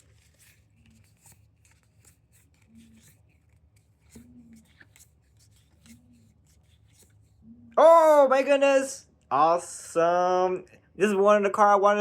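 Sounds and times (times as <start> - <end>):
card pack rustling and clicks: 0.0 - 7.3
soft low hums: 0.0 - 7.8.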